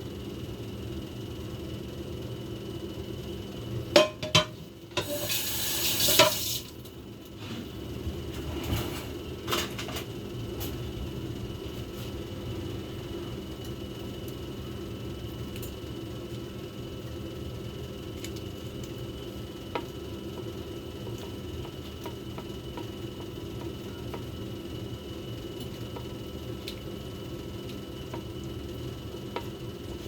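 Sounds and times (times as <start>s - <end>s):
steady low hum: 6.1s - 30.0s.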